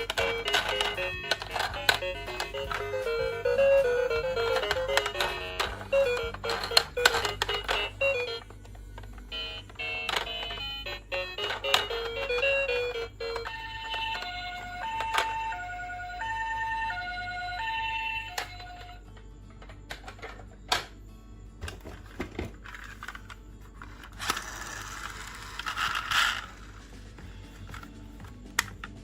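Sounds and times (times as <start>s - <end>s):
plastic toy clicks and knocks: 0.0s - 3.2s, 3.8s - 15.5s, 19.6s - 21.0s, 21.6s - 26.7s
toy electronic two-tone siren: 0.0s - 8.5s, 9.2s - 19.0s.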